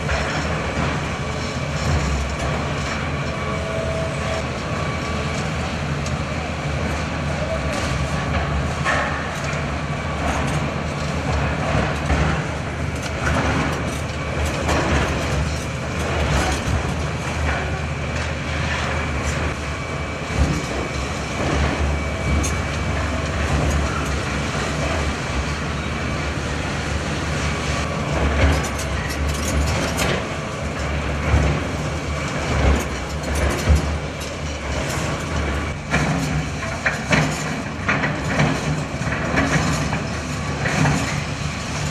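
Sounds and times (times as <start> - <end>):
diesel engine running: 0.0 - 41.9
demolition knocks and crashes: 10.1 - 19.6.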